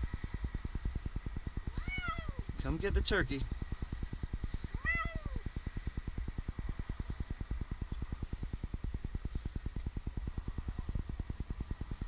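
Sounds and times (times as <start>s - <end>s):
fast low throbbing: 0.0s - 12.0s
young cat meowing: 1.7s - 2.4s, 4.8s - 5.4s.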